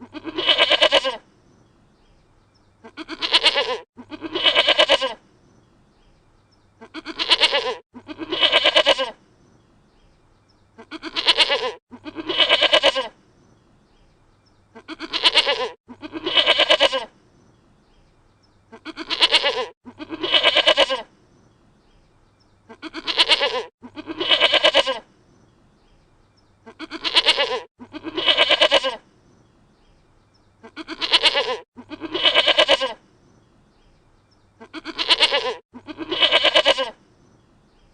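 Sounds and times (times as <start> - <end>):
goat bleating: 0.0 - 1.2, 2.8 - 5.2, 6.8 - 9.2, 10.8 - 13.2, 14.7 - 17.1, 18.7 - 21.1, 22.7 - 25.1, 26.6 - 29.0, 30.6 - 33.0, 34.6 - 37.0.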